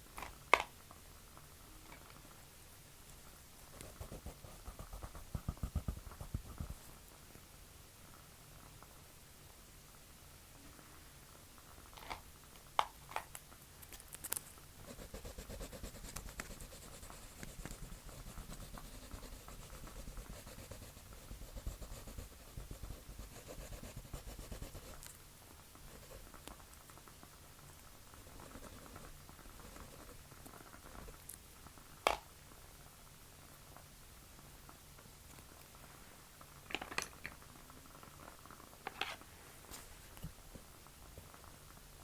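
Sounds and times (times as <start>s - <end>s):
pencil scratching on paper: 3.7s - 6.8s, 14.9s - 25.0s.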